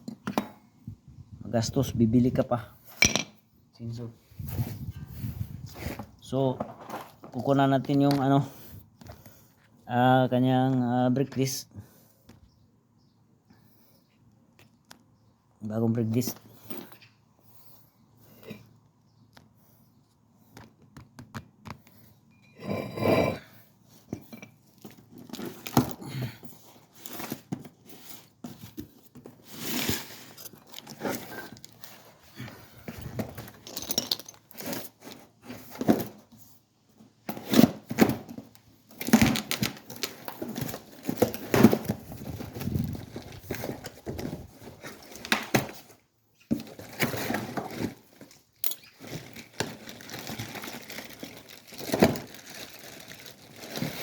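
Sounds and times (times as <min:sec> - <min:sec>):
wrapping crinkling and tearing: 0:46.6 - 0:54.0.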